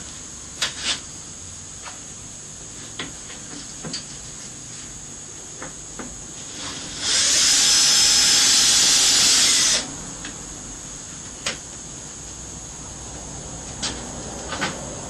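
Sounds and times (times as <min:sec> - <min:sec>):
electric drill boring: 0:06.4 - 0:09.9.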